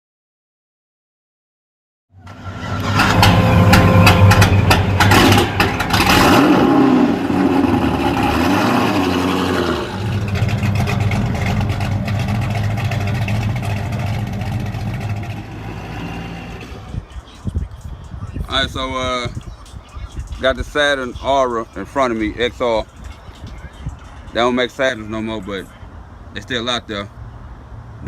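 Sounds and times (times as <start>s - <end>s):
car engine revving and idling: 2.3s - 17.4s.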